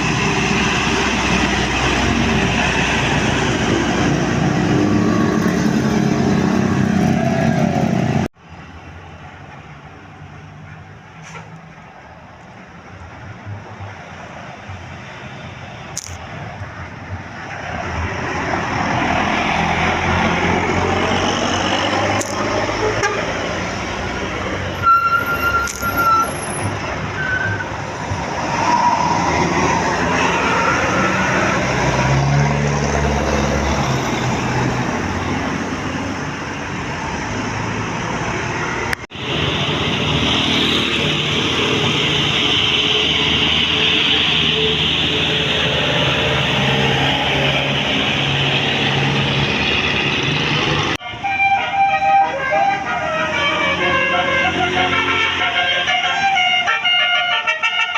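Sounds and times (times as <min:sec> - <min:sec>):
bus engine hum: 0:00.0 - 0:57.9
road traffic noise: 0:00.0 - 0:57.9
sharp click: 0:15.9 - 0:16.2, 0:22.2 - 0:22.4, 0:25.6 - 0:25.9.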